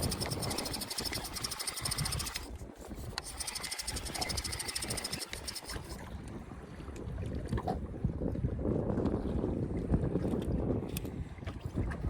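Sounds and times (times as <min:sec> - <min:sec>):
fishing reel ticking: 0:00.0 - 0:06.0
wind rumble on microphone: 0:00.0 - 0:12.0.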